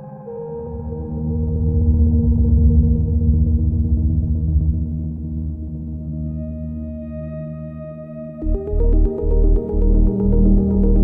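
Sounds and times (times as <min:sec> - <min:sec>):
ambient synth pads: 0:00.0 - 0:11.0
low drone: 0:08.4 - 0:11.0.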